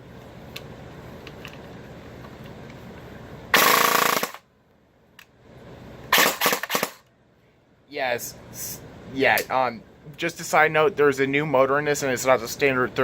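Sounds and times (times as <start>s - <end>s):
airsoft gun firing: 3.5s - 4.4s, 6.1s - 7.0s.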